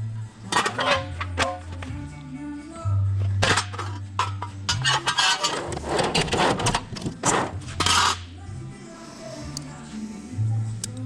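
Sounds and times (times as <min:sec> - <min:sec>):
background music with low bass: 0:00.0 - 0:11.0
rough scraping bursts: 0:03.4 - 0:08.2.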